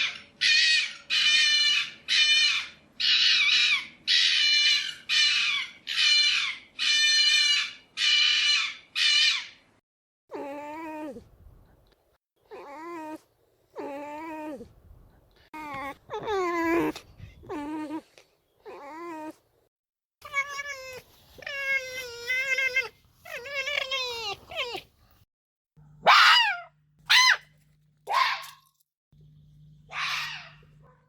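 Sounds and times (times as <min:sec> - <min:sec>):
fox harsh cries: 0:00.0 - 0:09.6, 0:26.0 - 0:27.5, 0:29.9 - 0:30.7
fox whining calls: 0:26.0 - 0:27.5.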